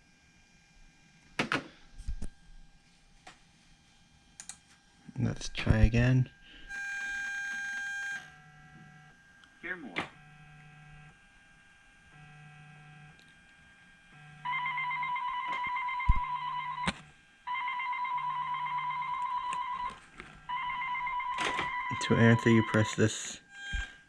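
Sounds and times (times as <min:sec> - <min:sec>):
faint low pulsing buzz: 0:00.0 - 0:17.5
trilling electronic ringtone: 0:14.4 - 0:16.9, 0:17.5 - 0:19.9, 0:20.5 - 0:24.0.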